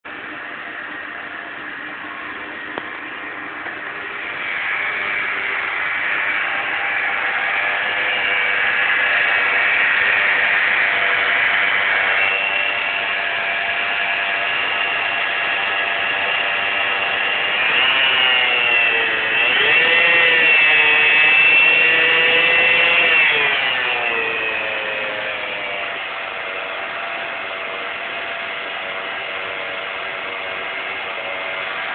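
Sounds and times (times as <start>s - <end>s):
car engine whining: 0.0s - 31.9s.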